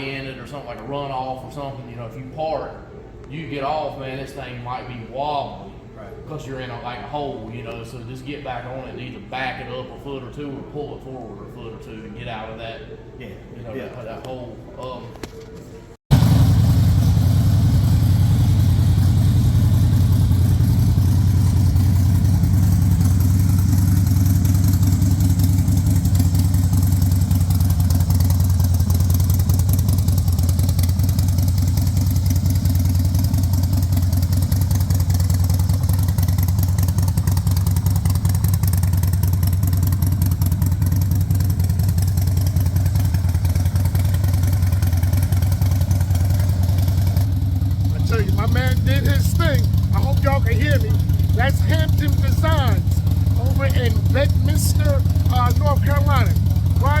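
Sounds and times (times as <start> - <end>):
motorcycle engine idling: 16.1 - 57.0.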